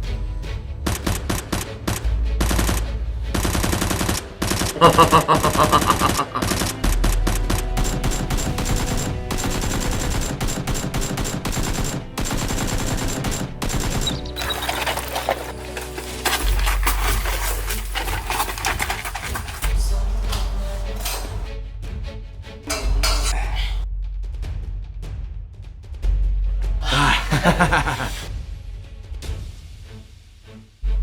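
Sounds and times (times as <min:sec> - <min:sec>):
automatic gunfire: 0:06.9 - 0:14.4.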